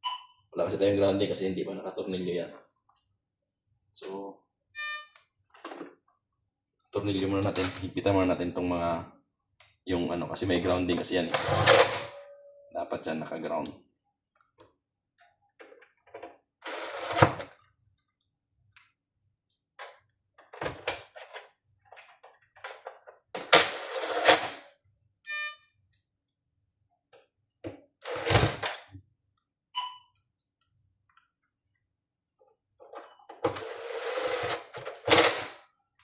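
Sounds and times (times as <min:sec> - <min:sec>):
brief high beep: 0:04.8 - 0:05.1, 0:25.3 - 0:25.6.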